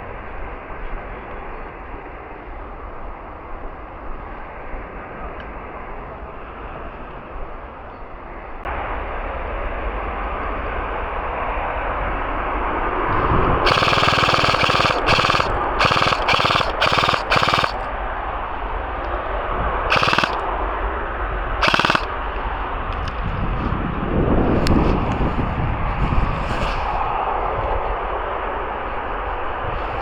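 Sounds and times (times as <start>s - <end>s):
airsoft gun firing bursts: 13.6s - 17.9s, 19.9s - 20.4s, 21.6s - 22.1s.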